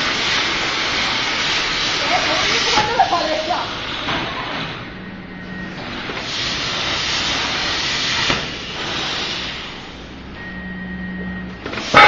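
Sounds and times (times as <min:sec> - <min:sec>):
plasma cutter torch hissing: 0:00.0 - 0:04.0, 0:05.8 - 0:10.0, 0:11.7 - 0:12.0.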